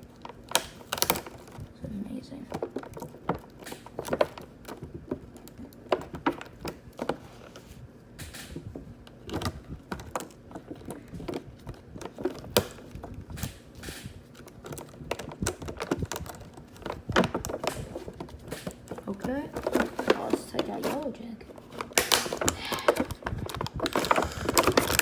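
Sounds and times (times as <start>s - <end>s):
plastic toy and packaging clicking: 0.0s - 1.7s, 2.4s - 7.2s, 8.2s - 25.0s.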